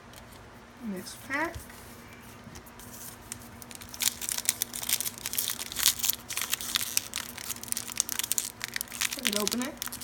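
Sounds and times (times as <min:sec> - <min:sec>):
foil wrapper crinkling: 0:03.1 - 0:10.0.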